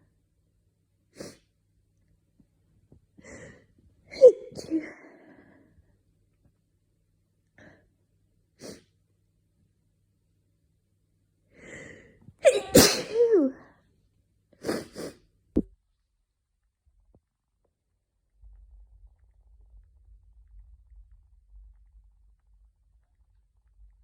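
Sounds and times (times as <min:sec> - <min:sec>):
gasping in-breath: 0:11.5 - 0:12.2
person sneezing: 0:12.4 - 0:13.6, 0:14.6 - 0:15.2
short sniffing breaths: 0:14.6 - 0:15.2.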